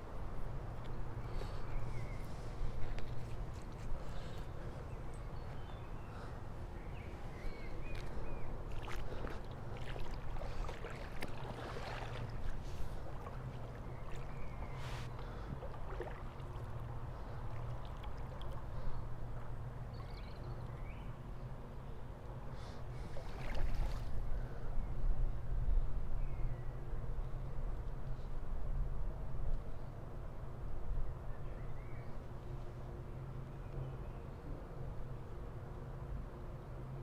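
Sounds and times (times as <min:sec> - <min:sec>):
water noise: 0:07.0 - 0:20.7, 0:22.9 - 0:24.3.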